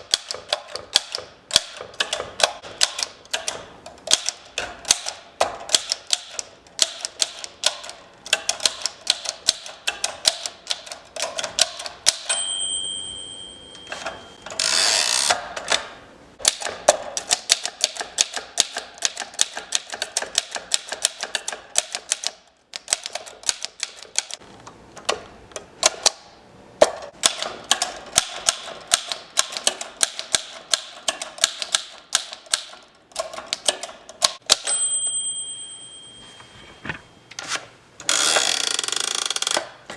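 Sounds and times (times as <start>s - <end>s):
typewriter key strikes: 0.0s - 12.7s, 16.4s - 24.4s, 27.1s - 34.9s
typewriter carriage return: 0.0s - 24.4s, 27.1s - 35.2s
typewriter bell ringing: 12.2s - 14.8s, 34.5s - 37.2s.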